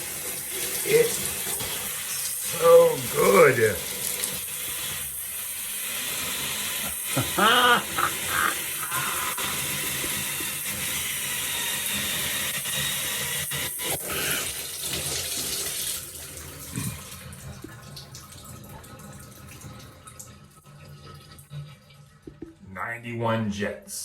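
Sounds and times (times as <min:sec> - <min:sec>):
shower water spraying: 0:00.0 - 0:17.3.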